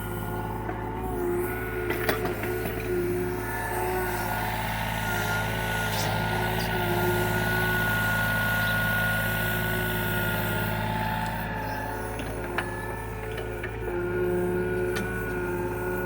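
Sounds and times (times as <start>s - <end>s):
diesel engine running: 0.0s - 16.0s.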